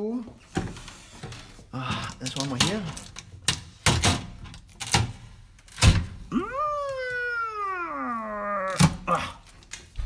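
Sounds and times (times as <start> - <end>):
wordless vocal sound: 6.3 - 9.5.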